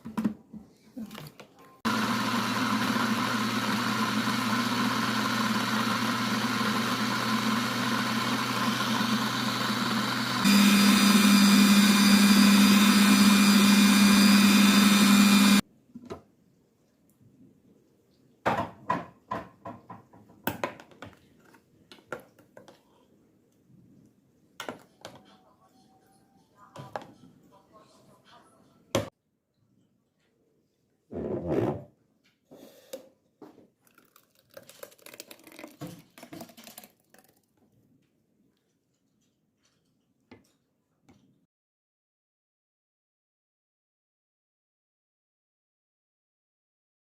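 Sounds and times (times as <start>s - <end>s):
electric blender motor running: 1.9s - 15.6s.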